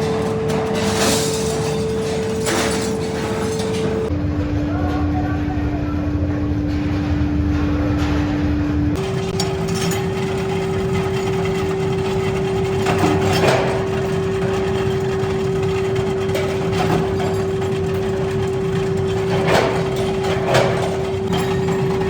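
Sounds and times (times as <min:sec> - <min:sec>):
machinery humming and rumbling: 0:00.0 - 0:22.0.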